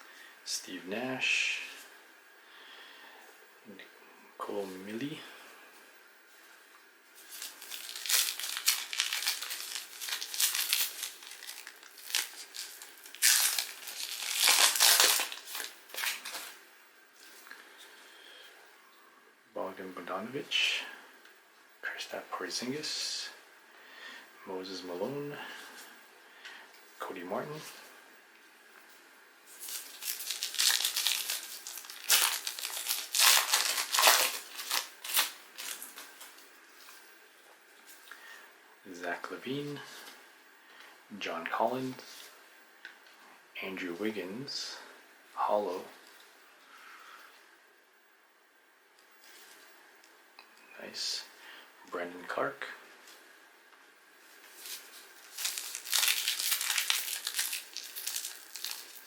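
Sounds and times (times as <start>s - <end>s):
plastic and foil wrapper crinkling: 7.2s - 16.6s, 29.5s - 36.4s, 54.3s - 59.0s.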